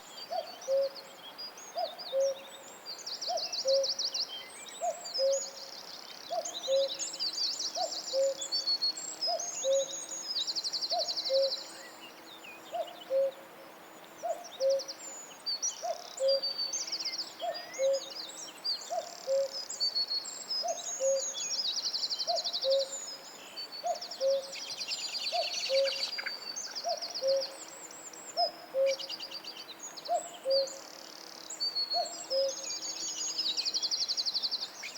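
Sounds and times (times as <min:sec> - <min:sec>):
low hooting bird call: 0:25.3 - 0:27.5.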